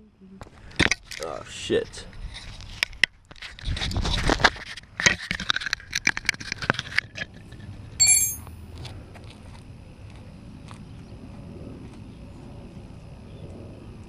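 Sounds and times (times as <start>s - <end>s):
struck metal ringing: 8.0s - 8.5s.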